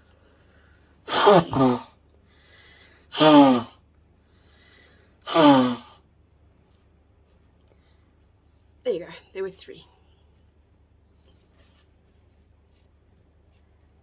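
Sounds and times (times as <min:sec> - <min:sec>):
woman blowing her nose: 0:01.1 - 0:02.0, 0:03.1 - 0:03.8, 0:05.3 - 0:06.0.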